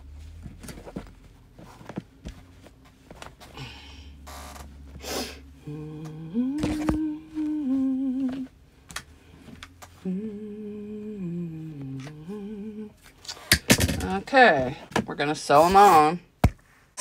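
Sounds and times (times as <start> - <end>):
handling rustles: 0.0 - 3.6
woman humming: 5.5 - 8.5, 10.0 - 13.0.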